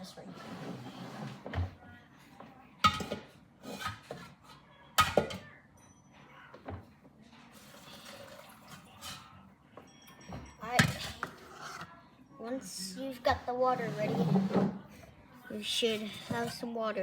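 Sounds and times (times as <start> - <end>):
kitchenware knocks and clanks: 0.4 - 1.8, 2.8 - 6.0, 7.7 - 11.9, 13.3 - 14.9.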